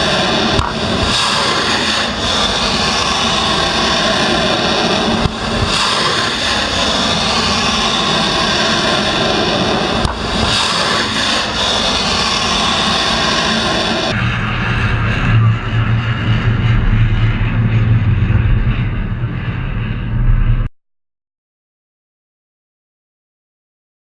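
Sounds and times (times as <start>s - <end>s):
missile launch roar: 0.0s - 14.2s.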